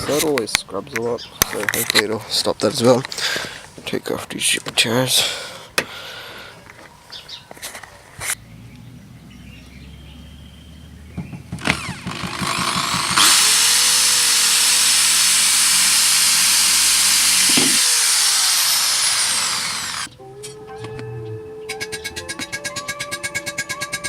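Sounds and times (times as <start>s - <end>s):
power drill running: 11.6s - 20.1s
music: 20.1s - 24.0s.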